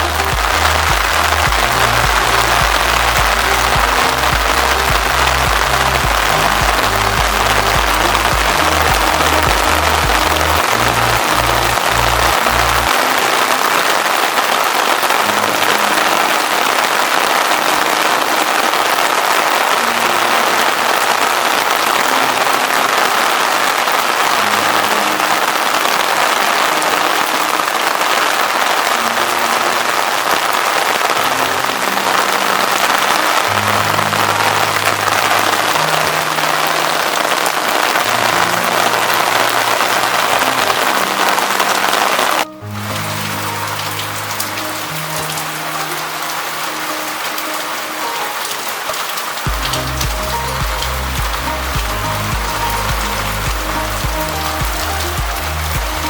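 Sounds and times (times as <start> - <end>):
background music with low notes: 0.0 - 56.0
rain on a rooftop: 0.0 - 56.0.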